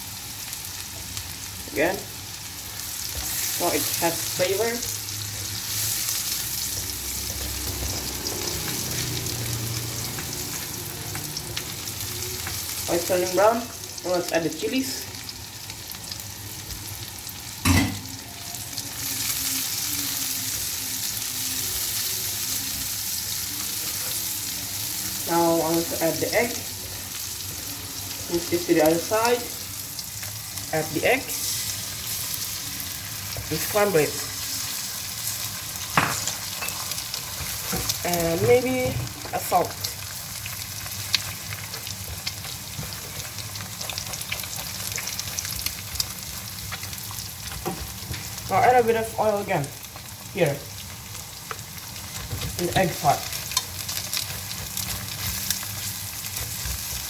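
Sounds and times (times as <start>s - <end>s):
food sizzling in hot oil: 0.0s - 57.0s
spatula tapping and scraping: 53.5s - 57.0s.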